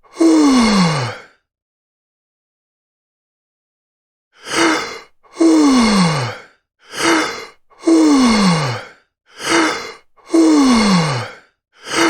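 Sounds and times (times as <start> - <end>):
person yawning: 4.5 - 6.4.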